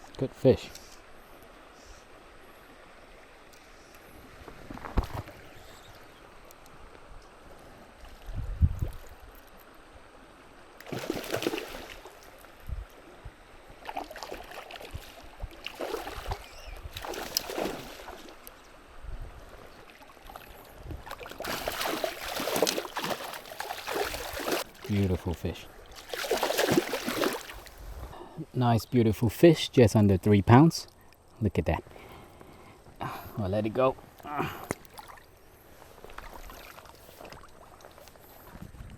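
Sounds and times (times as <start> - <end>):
creek running: 0.0 - 38.7
water splashing: 10.8 - 12.6, 13.7 - 18.6, 19.5 - 27.8, 34.3 - 38.5.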